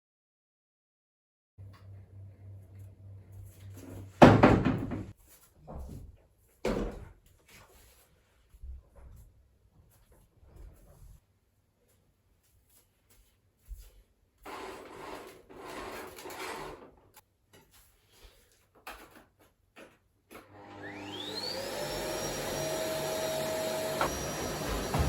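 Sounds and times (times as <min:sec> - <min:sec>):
vacuum cleaner motor whine: 0:20.4 - 0:25.0.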